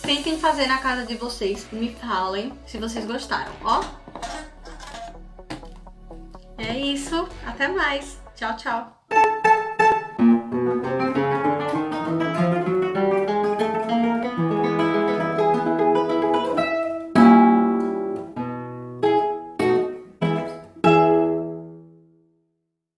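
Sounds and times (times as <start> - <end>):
acoustic guitar playing: 9.1 - 22.2.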